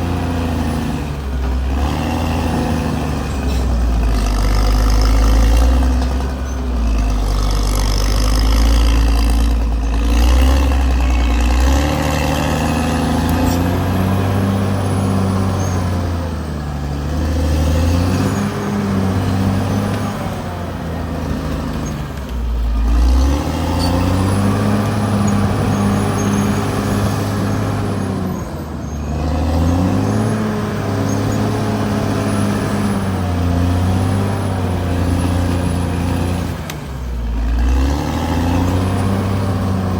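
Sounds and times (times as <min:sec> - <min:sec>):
bulldozer diesel engine revving: 0:00.0 - 0:39.9.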